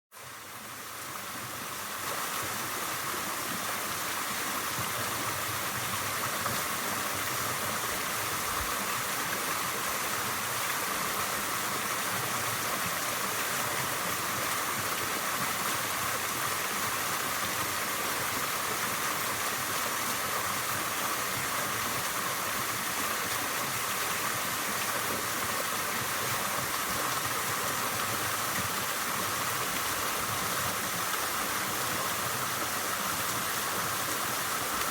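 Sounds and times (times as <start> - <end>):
waterfall rushing: 0.4 - 34.9.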